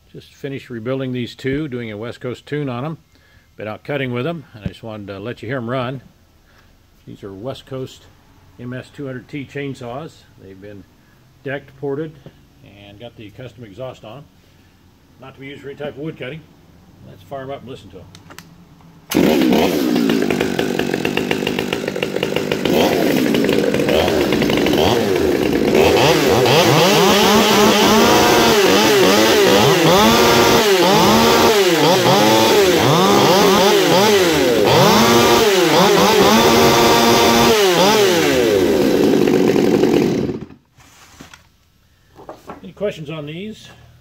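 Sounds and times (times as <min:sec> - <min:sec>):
chainsaws revving: 0:19.1 - 0:40.6.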